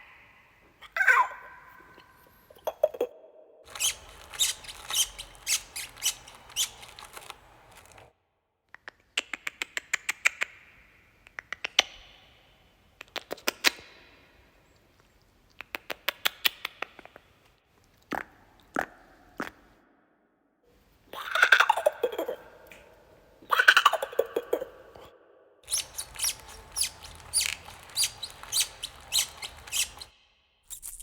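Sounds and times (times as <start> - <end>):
small animal squeaks: 3.7 - 8.0, 25.6 - 30.1.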